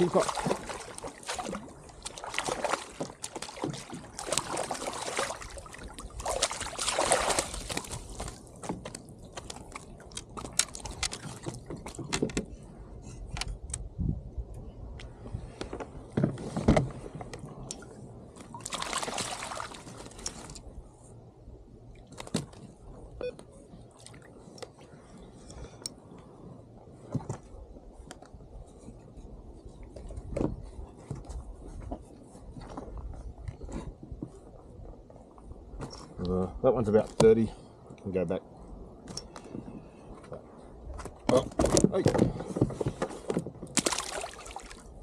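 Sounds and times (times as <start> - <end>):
water sloshing and splashing: 0.0 - 12.5, 15.4 - 20.7, 23.8 - 25.2, 39.0 - 45.0
knocks and rustles on hull: 0.0 - 13.6, 15.2 - 17.6, 22.1 - 22.8, 26.4 - 36.2, 39.0 - 45.0.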